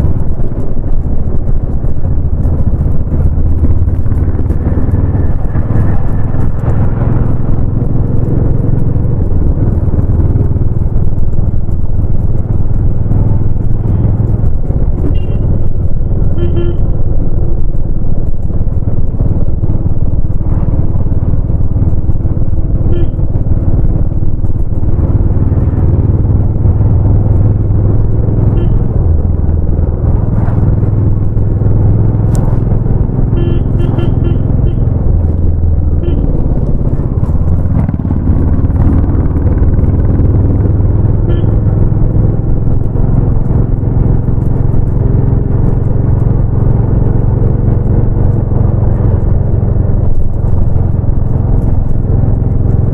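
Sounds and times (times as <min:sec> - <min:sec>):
motorcycle engine running: 0:00.0 - 0:52.9
horn toots: 0:15.0 - 0:15.6, 0:16.3 - 0:17.0, 0:22.9 - 0:23.2, 0:28.6 - 0:28.9, 0:33.3 - 0:34.9, 0:36.0 - 0:36.4, 0:41.2 - 0:41.6.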